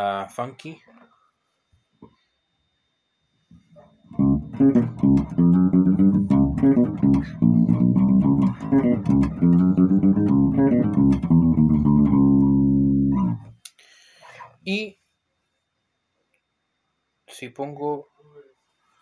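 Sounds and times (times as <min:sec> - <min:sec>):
electric bass guitar riff: 0:04.0 - 0:13.6.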